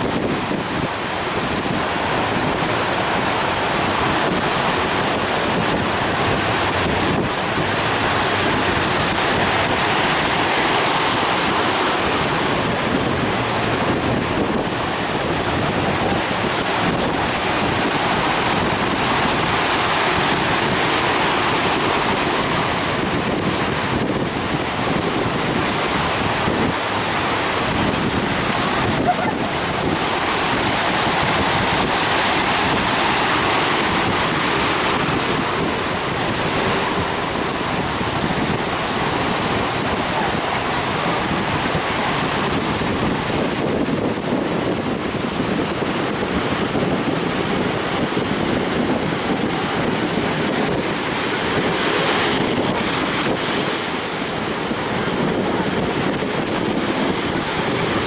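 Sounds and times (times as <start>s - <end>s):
ocean surf breaking: 0.0s - 58.0s
wind buffeting microphone: 0.0s - 58.0s.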